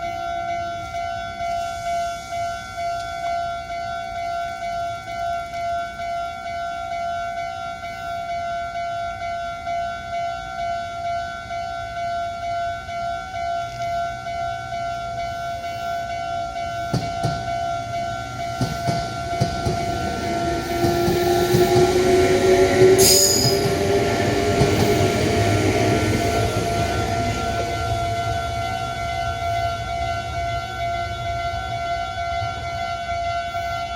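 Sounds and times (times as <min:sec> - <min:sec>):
level-crossing bell ringing: 0:00.0 - 0:33.9
train wheels clattering on rail joints: 0:16.8 - 0:27.8.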